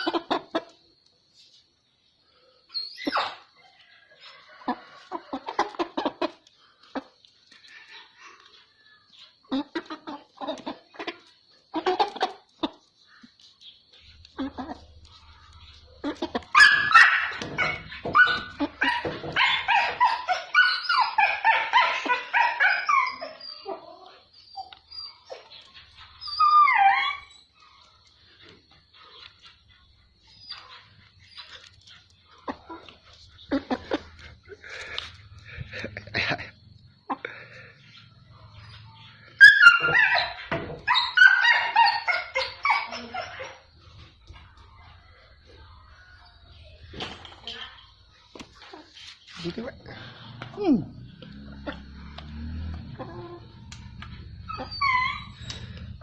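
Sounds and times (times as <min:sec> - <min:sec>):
animal yelping: 0:15.8 - 0:27.8, 0:38.3 - 0:44.4, 0:49.9 - 0:56.0.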